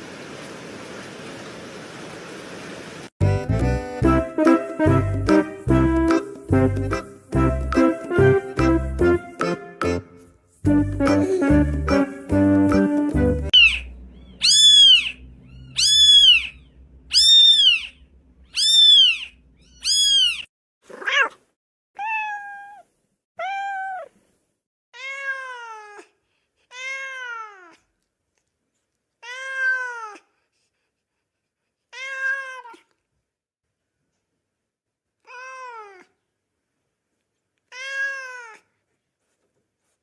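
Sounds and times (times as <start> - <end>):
cat meowing: 13.6 - 21.4, 22.0 - 22.8, 23.4 - 24.1, 25.0 - 26.0, 26.7 - 27.8, 29.2 - 30.2, 31.9 - 32.9, 35.2 - 36.1, 37.7 - 38.6.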